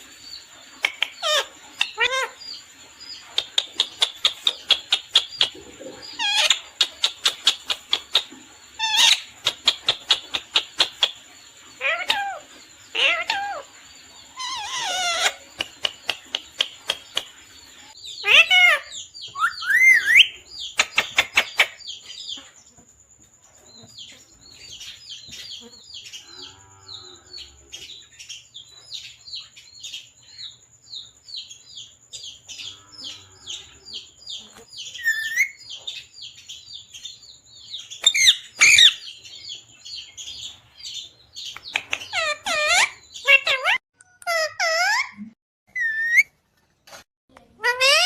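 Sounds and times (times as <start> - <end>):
parrot squawking: 0.8 - 2.4, 6.2 - 7.7, 8.8 - 9.3, 11.8 - 13.6, 14.4 - 15.4, 18.2 - 21.8, 38.0 - 39.0, 41.9 - 46.4, 47.6 - 48.0
parrot chirping: 0.8 - 2.6, 3.2 - 11.2, 11.8 - 13.7, 14.3 - 17.3, 17.9 - 22.4, 34.4 - 36.0, 37.6 - 46.4, 47.6 - 48.0.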